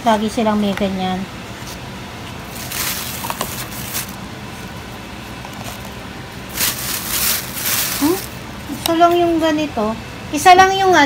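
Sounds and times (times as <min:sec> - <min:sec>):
food packaging rustling: 0:02.5 - 0:04.2, 0:05.5 - 0:08.4.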